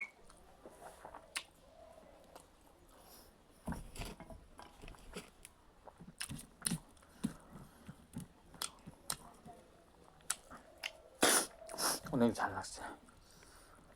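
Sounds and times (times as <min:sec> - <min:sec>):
person chewing with crunches: 0:00.8 - 0:01.6, 0:04.0 - 0:09.4, 0:10.0 - 0:12.1
mouth clicks: 0:10.2 - 0:12.1.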